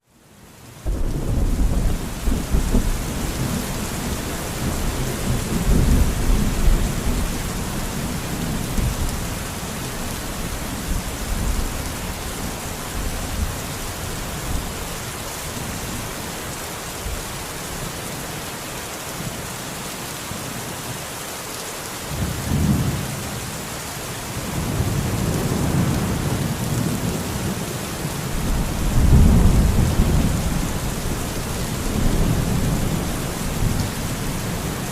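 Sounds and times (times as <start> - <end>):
heavy rain hissing: 0.3 - 34.9
thunder rumbling: 0.8 - 14.7, 28.3 - 34.9.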